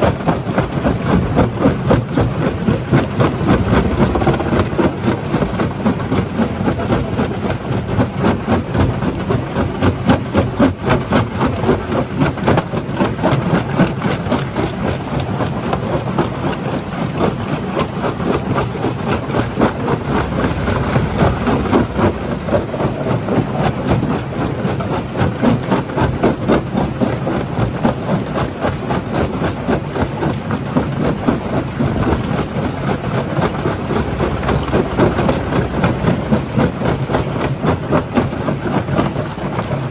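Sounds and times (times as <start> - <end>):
heavy machinery drone: 1.1 - 8.0, 18.0 - 25.0, 31.6 - 39.6
rock rattling and knocking: 1.2 - 6.0, 19.1 - 23.0.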